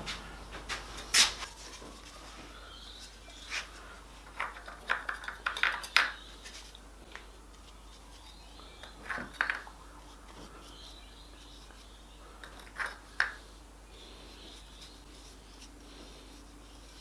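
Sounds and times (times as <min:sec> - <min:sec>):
wooden strips clicking and knocking: 0:03.0 - 0:10.6.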